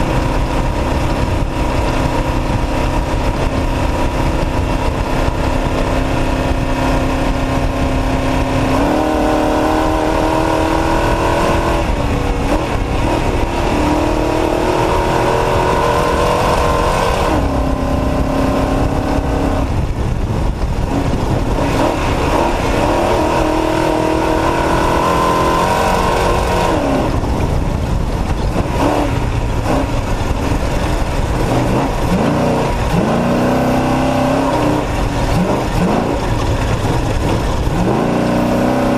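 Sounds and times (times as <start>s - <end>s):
truck engine revving: 0.0s - 38.9s
wind and road noise: 0.0s - 38.9s.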